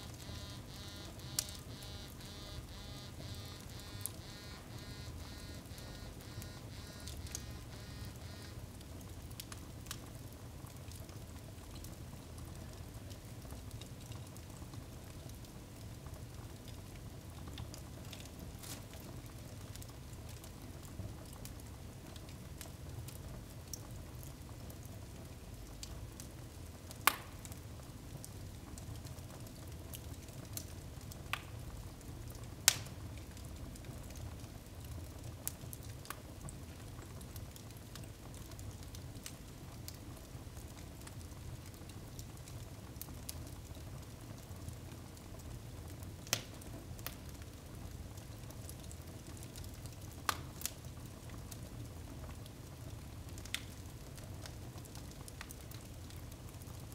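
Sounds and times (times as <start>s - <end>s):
wood fire crackling: 0.0s - 56.9s
loud pops from fire: 26.9s - 27.6s, 32.6s - 33.0s.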